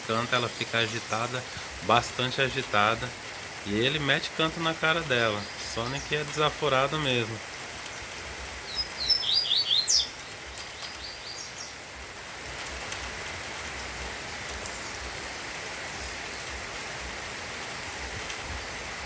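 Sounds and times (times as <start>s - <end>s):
rain falling: 0.0s - 19.0s
bird chirping song: 2.3s - 11.8s.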